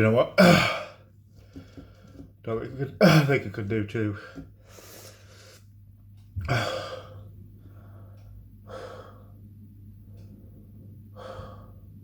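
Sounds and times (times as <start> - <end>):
man breathing heavily: 4.2 - 5.7, 6.4 - 9.4, 11.1 - 12.0.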